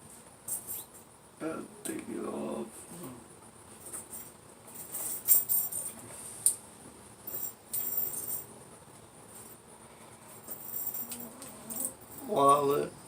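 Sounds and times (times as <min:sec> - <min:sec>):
metal chain jingling: 0:04.1 - 0:06.0, 0:07.2 - 0:08.5, 0:10.4 - 0:12.4.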